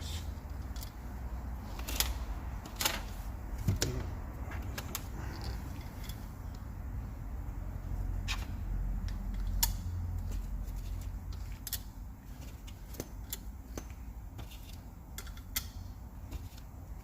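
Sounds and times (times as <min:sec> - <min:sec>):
metallic clicks of small parts: 0:12.6 - 0:15.9.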